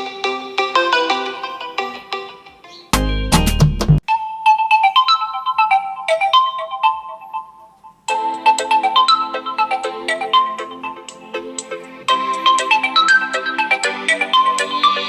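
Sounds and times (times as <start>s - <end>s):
smartphone ringtone melodies: 4.1s - 15.0s.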